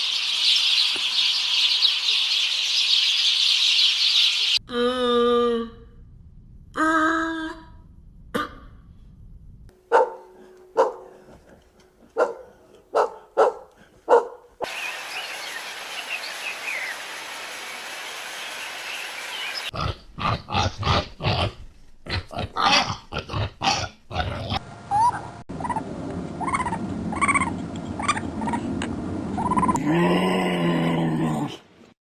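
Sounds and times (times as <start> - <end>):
dogs barking: 9.8 - 11.5, 12.1 - 14.6
high-pitched dog calls: 9.9 - 11.2.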